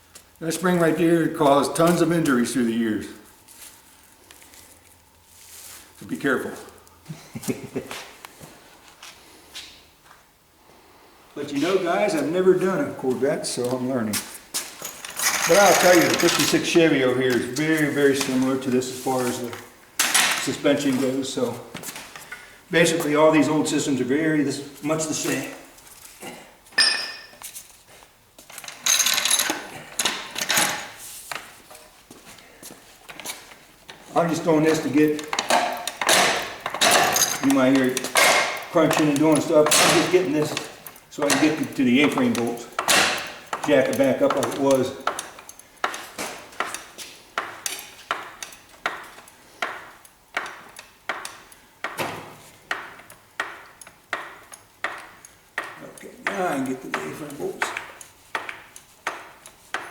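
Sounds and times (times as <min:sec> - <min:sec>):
metallic clattering: 0:14.7 - 0:16.8, 0:34.3 - 0:46.2
hydraulic jack metallic clanks: 0:34.8 - 0:49.8.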